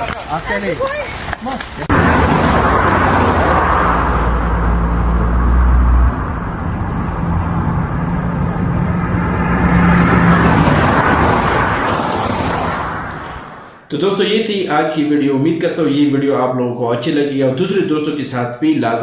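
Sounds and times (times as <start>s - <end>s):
loud steady rushing noise: 1.7s - 13.9s
low vehicle hum: 1.8s - 13.9s
higher hum: 1.9s - 13.9s.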